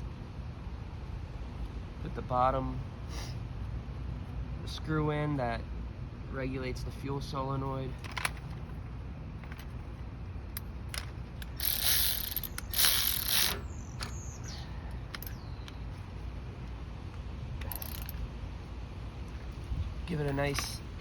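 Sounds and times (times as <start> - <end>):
ratchet clicking: 10.6 - 14.2, 15.1 - 15.4, 17.6 - 18.2.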